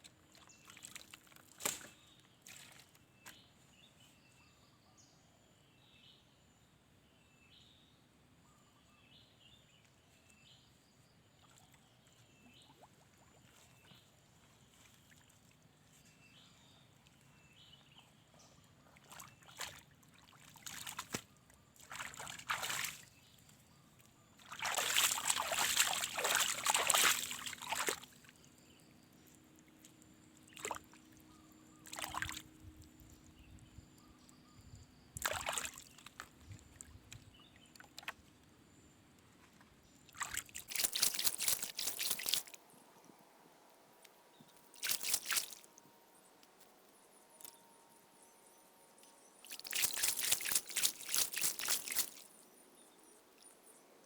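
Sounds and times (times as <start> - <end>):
water splashing and sloshing: 0.1 - 3.4, 18.8 - 23.2, 24.3 - 28.5, 29.6 - 31.2, 31.8 - 32.5, 35.2 - 38.3, 39.4 - 43.2, 44.0 - 45.8, 49.4 - 52.4.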